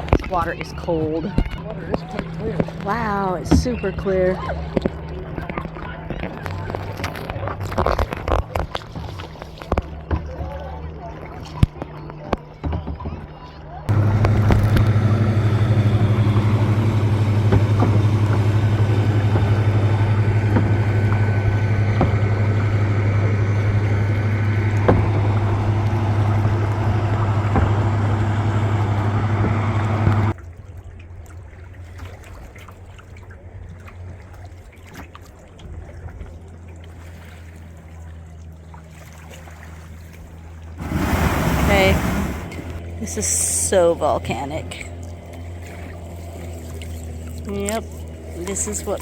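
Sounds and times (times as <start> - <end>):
motorboat engine running: 0.0 - 49.0
water noise: 0.0 - 49.0
small knocks: 13.9 - 30.3.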